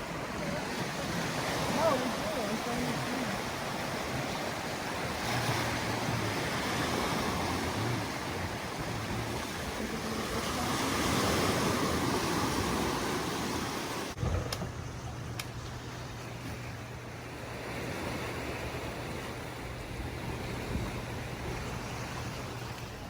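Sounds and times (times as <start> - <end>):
surf washing on beach: 0.0 - 14.7, 15.4 - 23.0
wind on microphone: 17.4 - 23.0.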